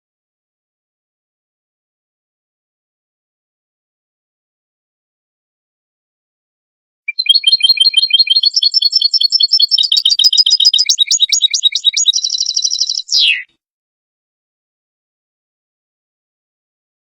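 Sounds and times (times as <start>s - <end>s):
goldfinch twittering song: 7.1s - 13.5s.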